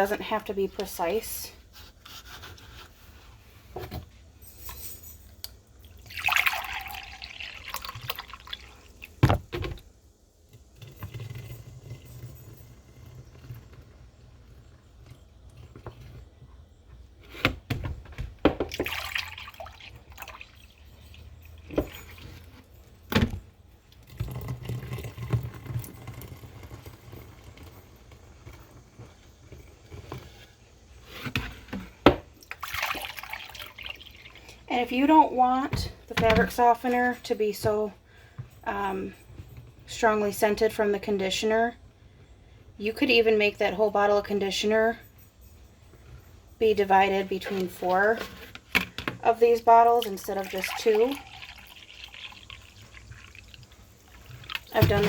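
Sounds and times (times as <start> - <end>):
liquid gurgling and splashing: 50.0 - 55.0.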